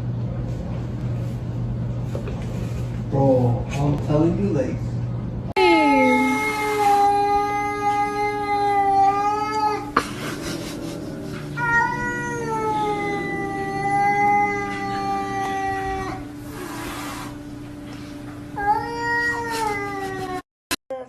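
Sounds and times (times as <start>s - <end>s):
cat yowling: 5.8s - 9.9s, 11.4s - 16.3s, 18.6s - 20.4s.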